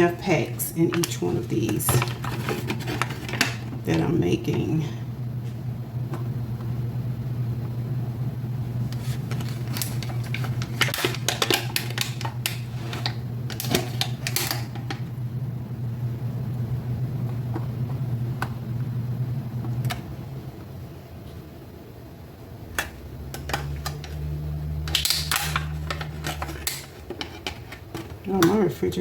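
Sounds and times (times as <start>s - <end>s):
steady low hum: 0.0s - 29.0s
kitchen clicks and clatter: 9.3s - 14.9s.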